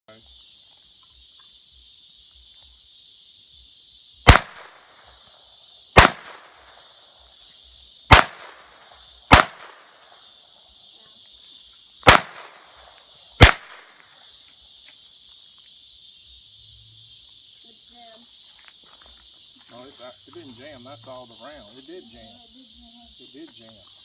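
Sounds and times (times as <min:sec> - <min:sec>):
insects trilling: 0:00.1 - 0:24.0
pistol shots: 0:04.3 - 0:04.8, 0:06.0 - 0:06.6, 0:08.1 - 0:10.0, 0:12.0 - 0:12.8, 0:13.4 - 0:14.0.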